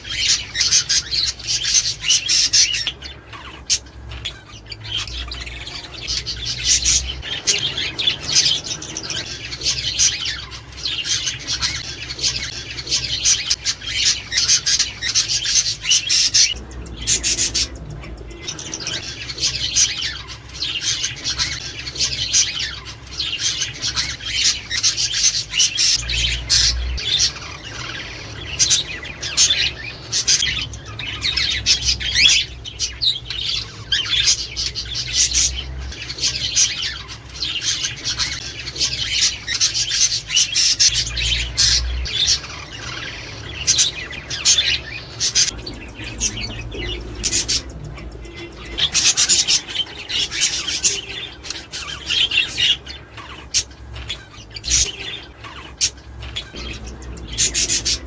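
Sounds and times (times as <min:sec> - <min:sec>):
budgerigars chirping and squawking: 0:00.0 - 0:58.0.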